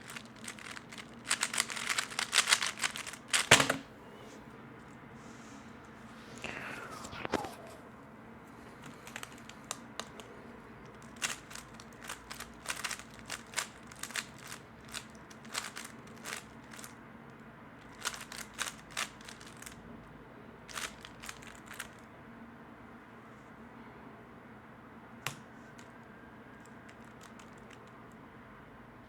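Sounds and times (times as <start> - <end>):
plastic puzzle cube clicking: 0.0 - 3.8, 8.8 - 10.2, 11.0 - 16.9, 17.9 - 19.8, 20.7 - 22.0, 26.9 - 27.9.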